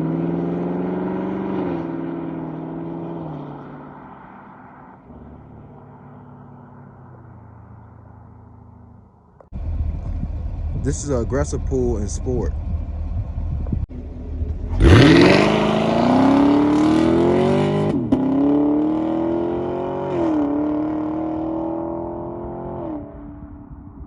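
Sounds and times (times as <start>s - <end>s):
car engine revving through gears: 0.0s - 3.8s, 12.7s - 23.1s.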